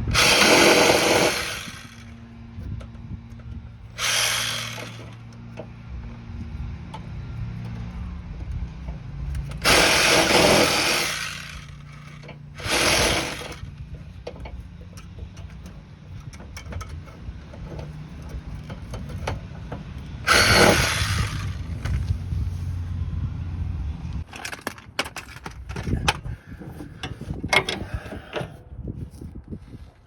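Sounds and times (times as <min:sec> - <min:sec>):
power tool bursts: 0:00.0 - 0:02.2, 0:04.0 - 0:05.2, 0:09.6 - 0:13.7, 0:20.3 - 0:22.0.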